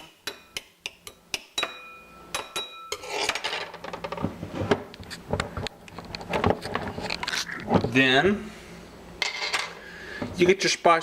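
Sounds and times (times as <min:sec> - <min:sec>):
knife scraping against a dish: 0:02.8 - 0:03.4.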